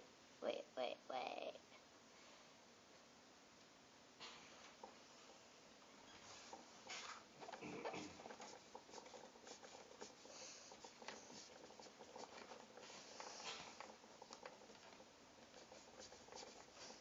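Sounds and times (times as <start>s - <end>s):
hands working modelling dough: 4.2s - 17.0s.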